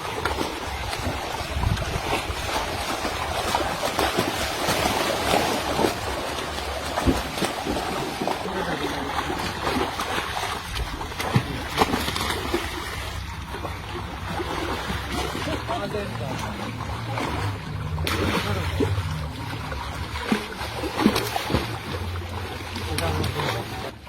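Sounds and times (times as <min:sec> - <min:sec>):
water splashing and trickling: 0:00.0 - 0:24.0
low rumble: 0:05.9 - 0:23.0.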